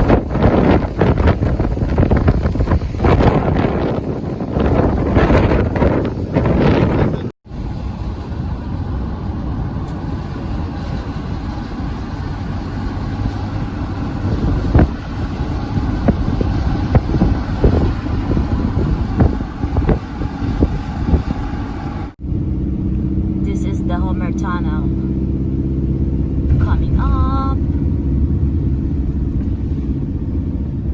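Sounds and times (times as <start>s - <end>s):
wind buffeting microphone: 0.0s - 23.5s, 24.2s - 30.9s
vehicle road and engine rumble: 0.0s - 30.9s.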